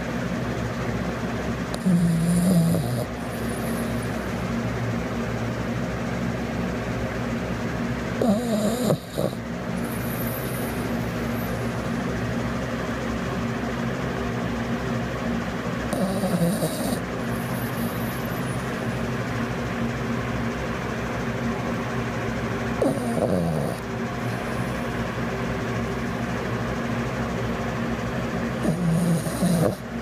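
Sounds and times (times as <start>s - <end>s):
steady low hum: 0.0s - 30.0s
dog snoring: 1.6s - 4.5s, 8.2s - 11.8s, 15.9s - 18.9s, 22.8s - 24.9s, 28.5s - 30.0s.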